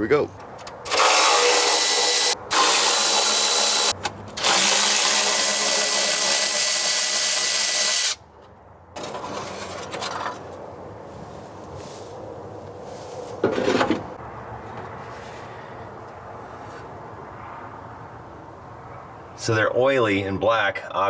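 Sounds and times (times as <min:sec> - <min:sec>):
power tool running: 0:00.8 - 0:08.2
scraping and handling noise: 0:08.4 - 0:17.0.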